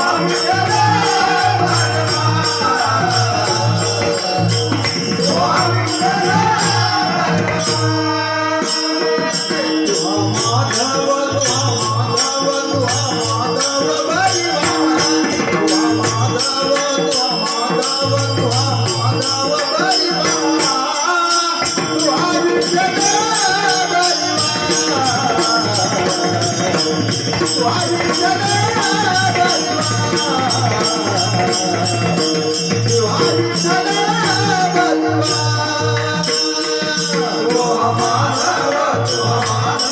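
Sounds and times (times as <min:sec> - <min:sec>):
small cymbals jingling: 0:00.0 - 0:39.9.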